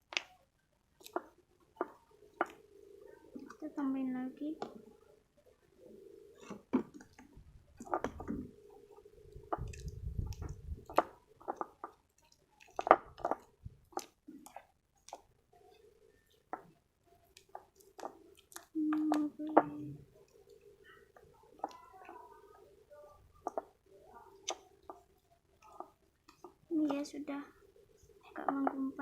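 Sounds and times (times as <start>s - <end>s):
slime squelching: 1.0s - 4.8s, 6.4s - 28.9s
steady low hum: 1.3s - 12.1s.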